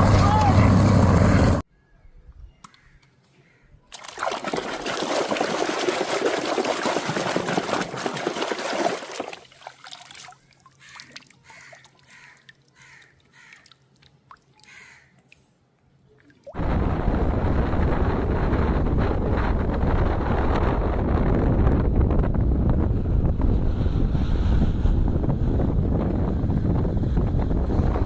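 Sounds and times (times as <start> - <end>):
water pouring: 3.9 - 14.7
faint water sounds: 3.9 - 16.6.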